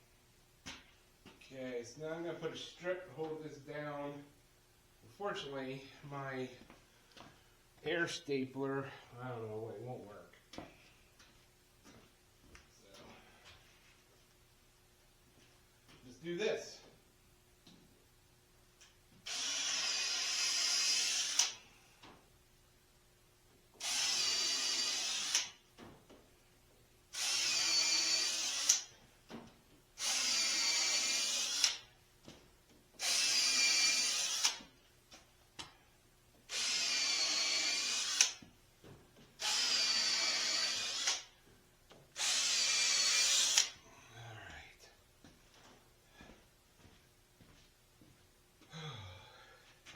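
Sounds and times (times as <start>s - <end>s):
power drill whining into wood: 19.2s - 21.6s, 23.8s - 25.6s, 27.1s - 28.9s, 30.0s - 31.8s, 33.0s - 34.6s, 36.5s - 38.4s, 39.4s - 41.3s, 42.2s - 43.8s
drill sharp click: 19.3s - 21.6s, 23.8s - 25.5s, 27.2s - 28.9s, 30.0s - 31.8s, 33.0s - 34.6s, 36.5s - 38.4s, 39.4s - 41.3s, 42.2s - 43.8s.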